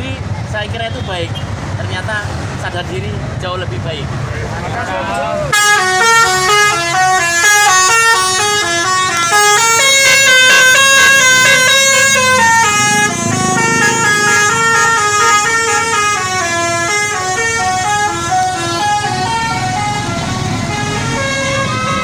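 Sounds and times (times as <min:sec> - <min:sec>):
musical air horn melody: 0:05.5 - 0:22.0.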